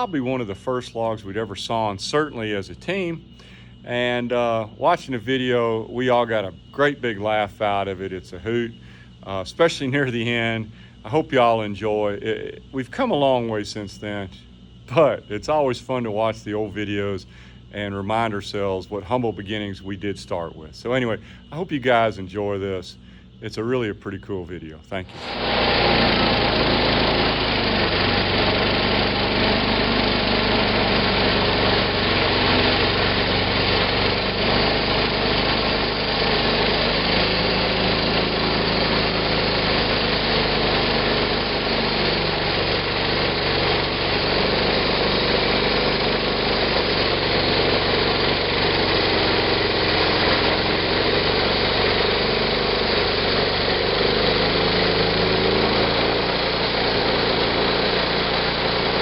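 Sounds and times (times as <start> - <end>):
sawmill engine running: 0.0 - 59.0.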